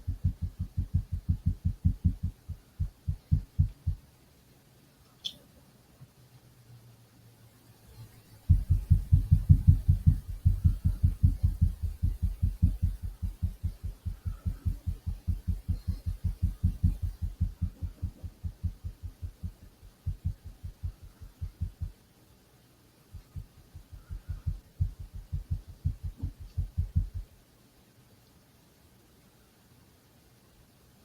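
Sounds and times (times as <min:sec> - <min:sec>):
rapid low dull banging: 0:00.0 - 0:04.0, 0:08.5 - 0:21.9, 0:23.2 - 0:27.3.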